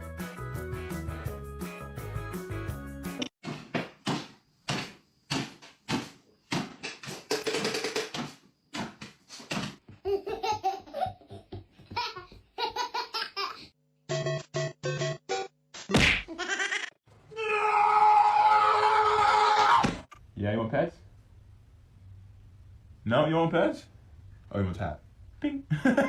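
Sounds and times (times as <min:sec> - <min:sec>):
person laughing: 0:16.3 - 0:17.0, 0:25.7 - 0:26.0.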